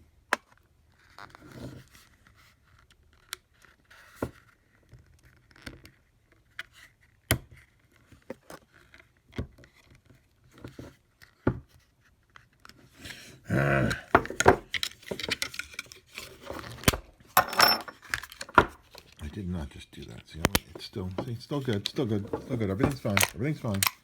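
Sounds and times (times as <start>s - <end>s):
metal parts clicking and clinking: 14.7s - 16.0s, 17.4s - 18.6s, 21.8s - 24.0s.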